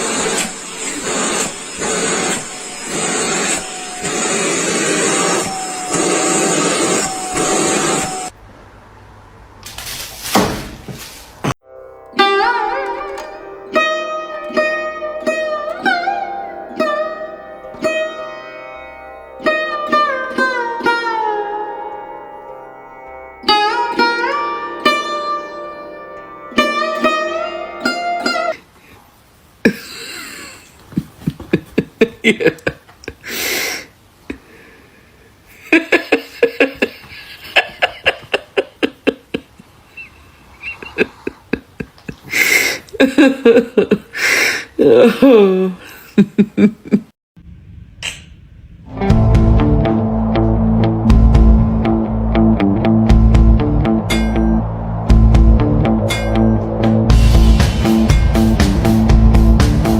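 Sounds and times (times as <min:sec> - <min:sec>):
plucked string instrument: 0:11.6 - 0:28.6, 0:48.9 - 0:59.9.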